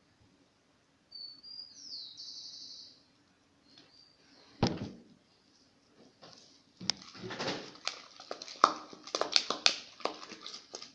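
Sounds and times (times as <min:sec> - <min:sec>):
small bird chirping: 0:01.1 - 0:04.5.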